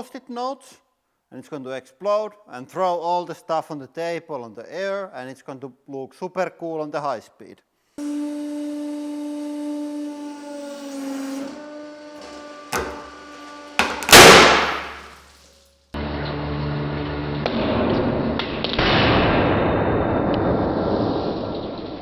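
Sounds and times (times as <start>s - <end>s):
hydraulic press humming: 8.0s - 15.2s
loud bang of paper stack bursting: 12.8s - 13.2s, 13.8s - 15.2s
sharp cracks: 12.8s - 13.2s, 13.8s - 15.2s.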